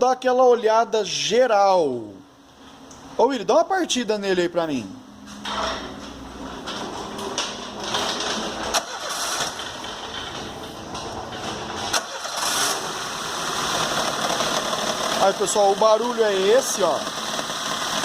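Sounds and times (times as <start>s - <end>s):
car engine starting and misfiring: 5.5s - 18.0s.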